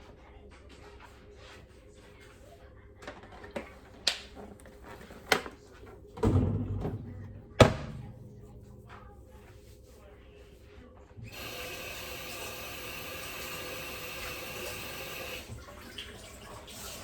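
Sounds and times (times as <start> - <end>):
household knocks and clatters: 3.1 - 9.0
heavy thud: 6.2 - 8.7.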